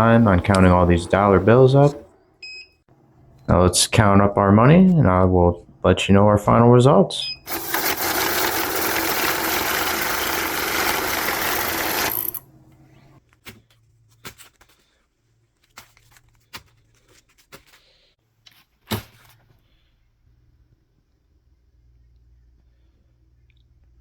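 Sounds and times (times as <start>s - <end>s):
bills clicking and tapping: 7.5s - 12.4s
banknote counter running: 7.5s - 12.5s.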